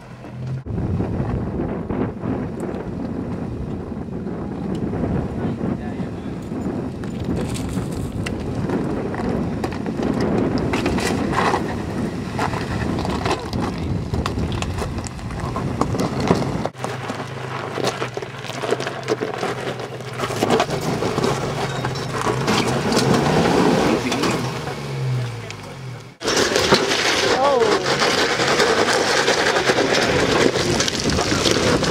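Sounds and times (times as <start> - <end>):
car engine running: 6.4 - 31.9
tyres crunching on gravel: 6.5 - 31.9
stones knocking: 12.4 - 23.3, 26.2 - 31.9.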